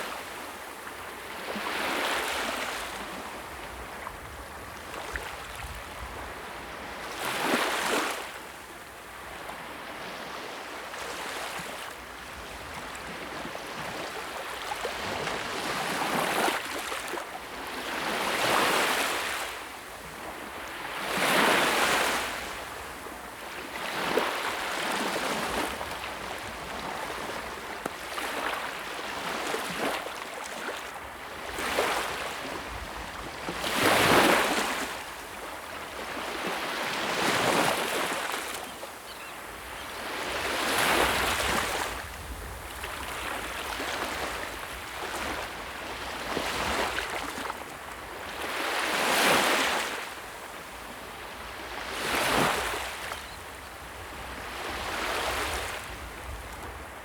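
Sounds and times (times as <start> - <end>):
sea waves breaking on shore: 12.7 - 57.0.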